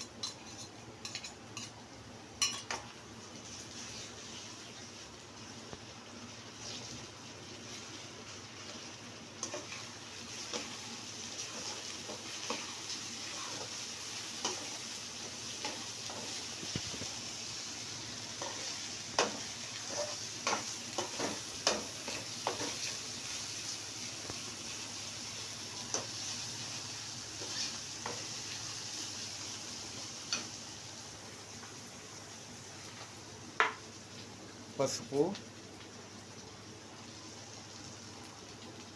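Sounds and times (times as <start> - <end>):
spoon scraping a pan: 0.0 - 1.8, 2.4 - 2.8, 11.4 - 14.9, 18.3 - 23.0, 27.4 - 28.3
paste sizzling in hot oil: 2.4 - 38.5.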